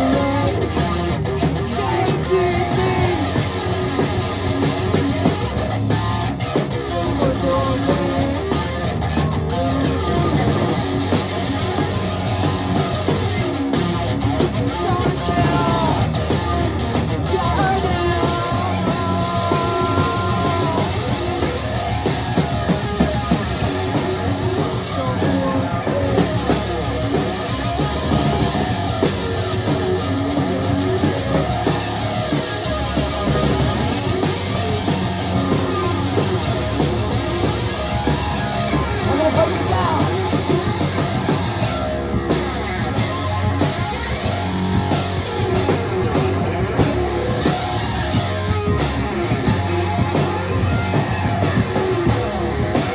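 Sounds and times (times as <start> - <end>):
person singing: 0.0 - 4.3, 5.9 - 8.8, 14.6 - 21.7, 24.4 - 26.9, 38.8 - 41.2
drums: 0.0 - 52.9
electric guitar: 0.0 - 52.9.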